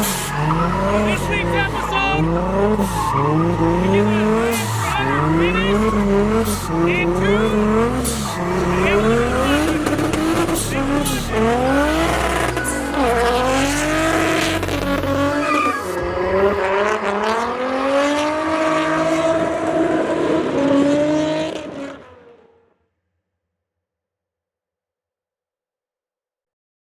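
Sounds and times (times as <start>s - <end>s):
tyre squeal: 0.0s - 16.2s
background music with bass line: 0.0s - 16.6s
car engine revving: 0.0s - 22.6s.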